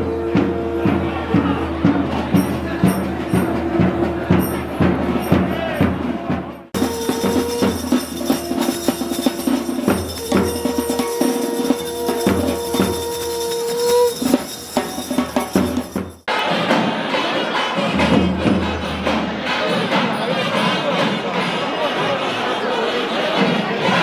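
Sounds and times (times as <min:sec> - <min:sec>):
small cymbals: 0:00.0 - 0:16.8
fast drum strokes: 0:00.0 - 0:22.2
reed pipe holding long notes: 0:06.8 - 0:15.9.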